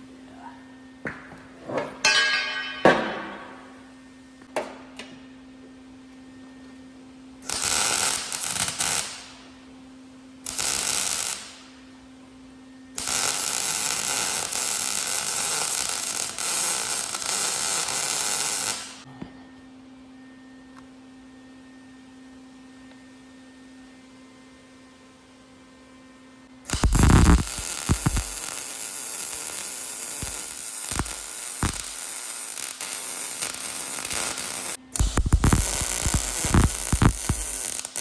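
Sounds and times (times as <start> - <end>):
welding arc crackle: 7.4 - 9.5, 10.4 - 11.8, 13.0 - 19.0, 26.7 - 38.0.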